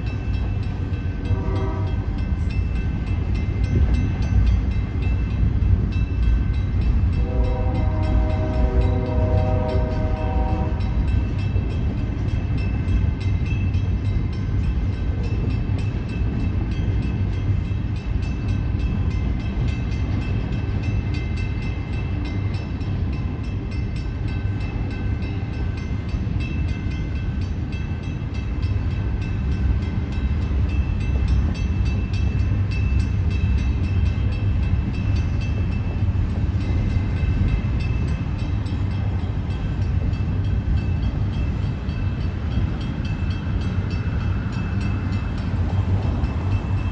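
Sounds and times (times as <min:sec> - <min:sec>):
train cars rumbling on rails: 0:00.0 - 0:46.9
train horn: 0:01.2 - 0:02.2, 0:07.1 - 0:11.3.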